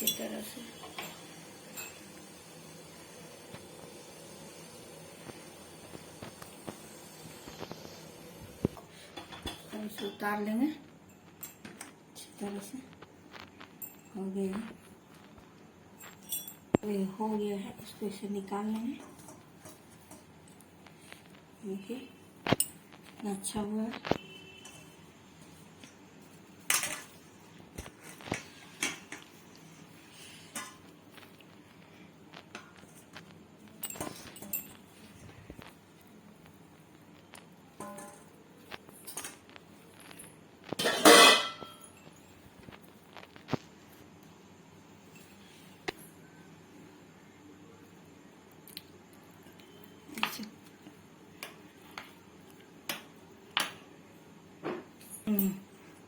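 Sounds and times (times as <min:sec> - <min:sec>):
metal utensils clinking on dishes: 0:00.0 - 0:02.2, 0:40.8 - 0:42.2.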